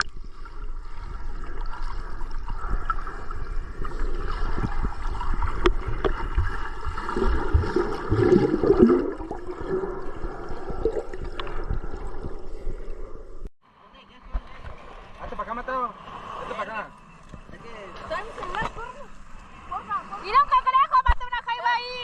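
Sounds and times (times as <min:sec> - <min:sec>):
sea water sloshing and gurgling: 0:00.0 - 0:13.5.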